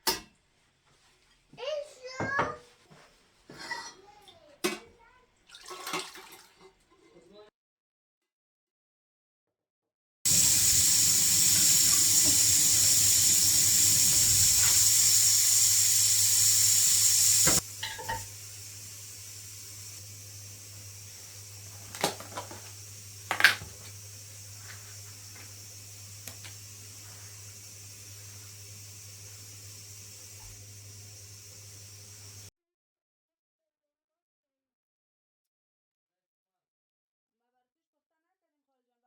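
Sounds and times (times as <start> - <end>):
tap running into sink: 10.3 - 32.5.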